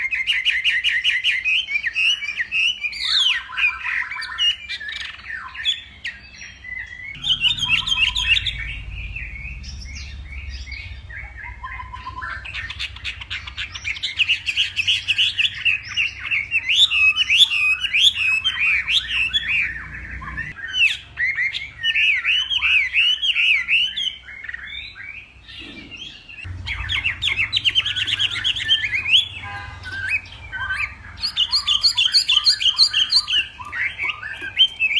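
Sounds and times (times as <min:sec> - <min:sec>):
bird singing whistled phrases: 0:00.0 - 0:34.9
low rumble: 0:07.2 - 0:15.6, 0:26.5 - 0:29.4.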